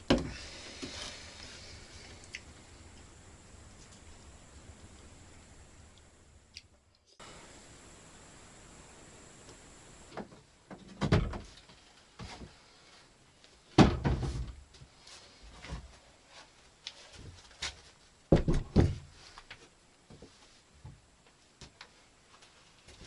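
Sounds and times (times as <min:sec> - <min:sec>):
knocks and thuds: 0:10.1 - 0:11.6, 0:13.8 - 0:14.6, 0:18.3 - 0:19.1.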